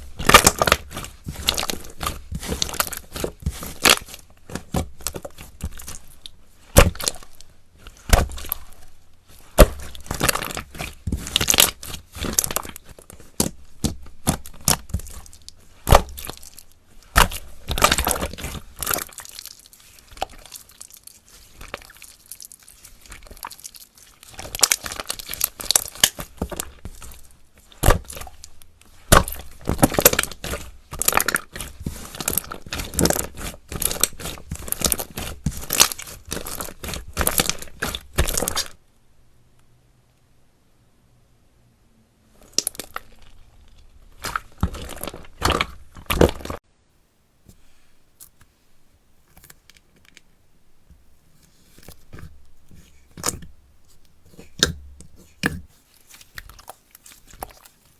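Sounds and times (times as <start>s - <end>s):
slime squished by hand: 0.0s - 38.7s, 51.3s - 57.9s.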